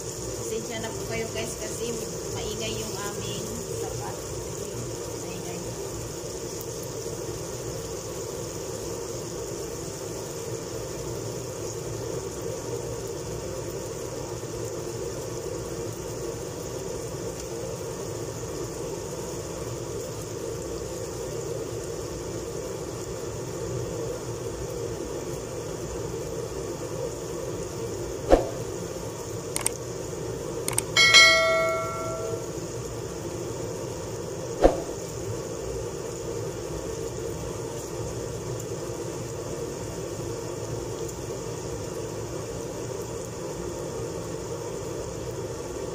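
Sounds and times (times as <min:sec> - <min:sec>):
chicken frying: 0:00.0 - 0:31.7, 0:32.3 - 0:45.9
sharp clicks: 0:30.7 - 0:31.0
metal clang: 0:31.0 - 0:32.5.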